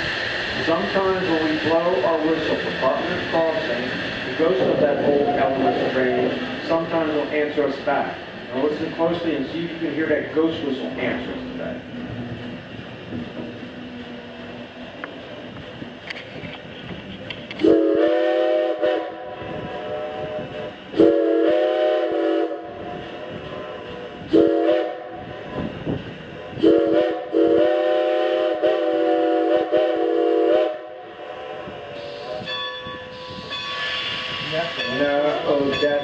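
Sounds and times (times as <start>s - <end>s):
train running noise: 0.0s - 36.0s
steam locomotive whistle blasts: 17.6s - 25.8s, 26.4s - 35.8s.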